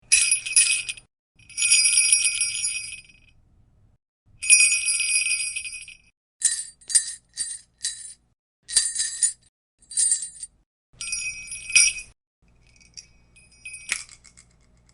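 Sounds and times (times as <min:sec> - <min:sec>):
sleigh bells jingling: 0:00.0 - 0:03.3, 0:04.4 - 0:14.7.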